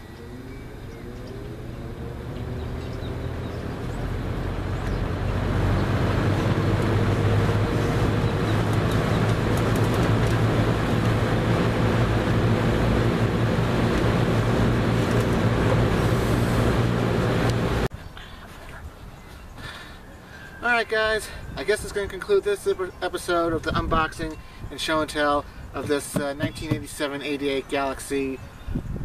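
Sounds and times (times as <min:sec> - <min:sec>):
box fan running: 0:00.0 - 0:17.9.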